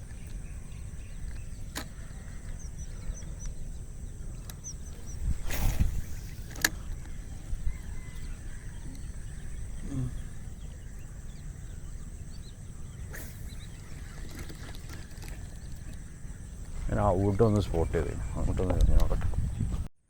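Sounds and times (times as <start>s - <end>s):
sharp clicks: 4.3s - 7.2s.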